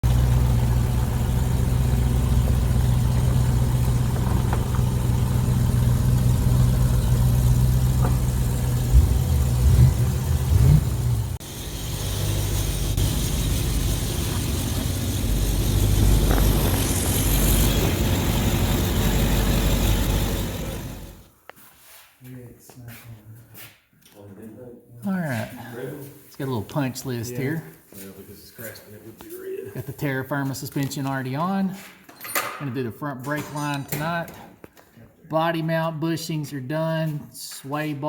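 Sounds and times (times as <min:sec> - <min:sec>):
hissy running engine: 0:00.0 - 0:21.3
vehicle engine idling and revving: 0:00.0 - 0:21.3.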